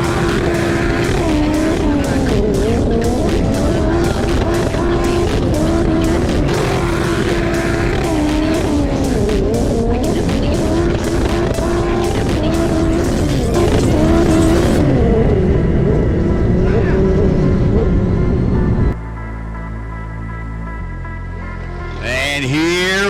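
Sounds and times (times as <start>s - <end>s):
background music with steady beat: 0.0s - 15.1s, 18.6s - 23.0s
jet ski engines racing: 0.0s - 18.4s.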